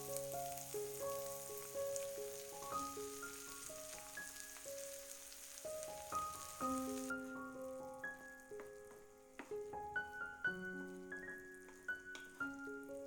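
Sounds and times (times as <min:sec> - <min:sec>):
food sizzling in a frying pan: 0:00.0 - 0:13.0
soft melodic background music: 0:00.0 - 0:13.0.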